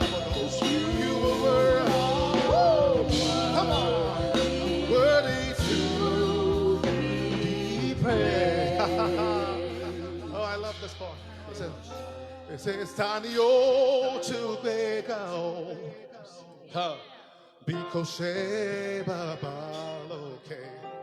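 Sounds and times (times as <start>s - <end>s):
bass: 0.0s - 13.5s
keyboard chords: 0.0s - 16.3s
people singing gospel: 0.0s - 21.0s.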